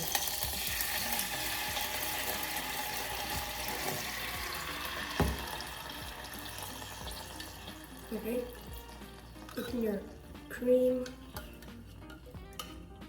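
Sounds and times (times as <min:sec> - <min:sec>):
coconut cream sizzling in a pan: 0:00.0 - 0:10.3.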